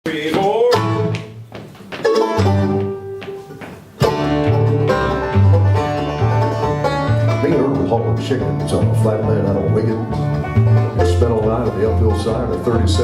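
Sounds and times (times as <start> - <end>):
bluegrass band playing: 0.1 - 13.0
rapid banjo picking: 0.3 - 13.0
steady bass line: 4.0 - 13.0.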